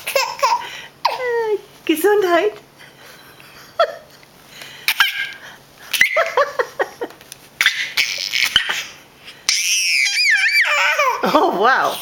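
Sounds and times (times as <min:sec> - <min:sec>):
baby laughing: 0:00.0 - 0:01.2, 0:04.9 - 0:07.0, 0:07.6 - 0:11.4.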